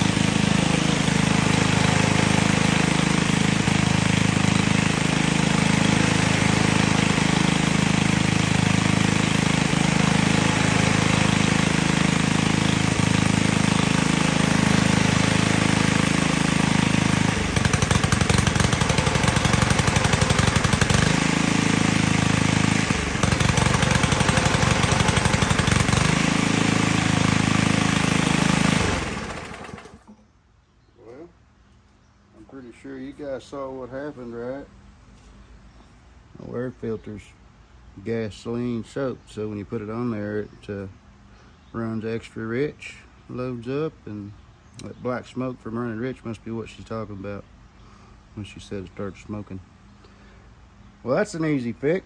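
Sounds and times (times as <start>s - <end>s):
string trimmer engine stuttering: 0.0s - 30.1s.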